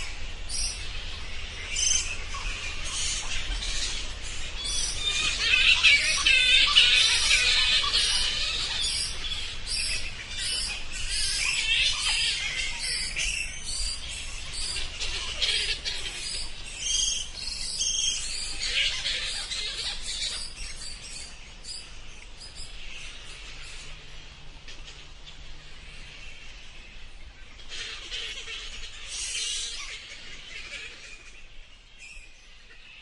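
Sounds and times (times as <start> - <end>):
bats squeaking and chittering: 0.0 - 24.0.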